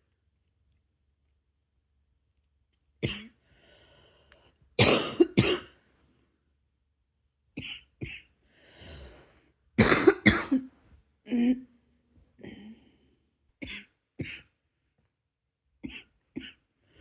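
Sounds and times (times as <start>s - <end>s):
person coughing: 3.0s - 3.4s, 4.8s - 5.8s, 7.6s - 8.3s, 9.8s - 10.7s, 13.6s - 14.5s, 15.8s - 16.6s.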